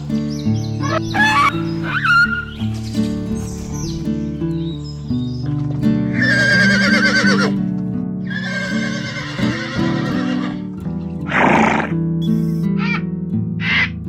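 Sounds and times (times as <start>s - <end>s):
horse whinnying: 6.2s - 7.6s, 8.3s - 10.6s, 11.3s - 11.9s.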